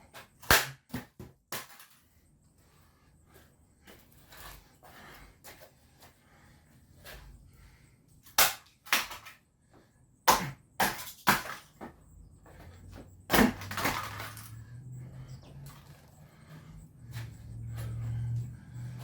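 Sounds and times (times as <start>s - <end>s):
camcorder smashing on floor: 10.8s - 11.7s, 13.3s - 14.5s.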